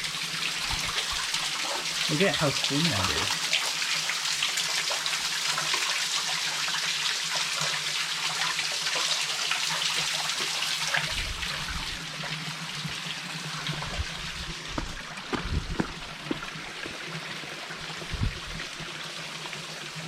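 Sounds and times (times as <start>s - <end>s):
stream water trickling and splashing: 0.0s - 20.0s.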